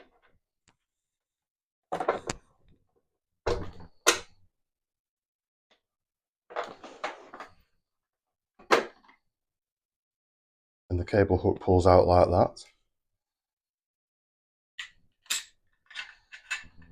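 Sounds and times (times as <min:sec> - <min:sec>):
tools and plastic parts clattering: 0:01.9 - 0:02.5, 0:06.5 - 0:07.6, 0:14.8 - 0:16.9.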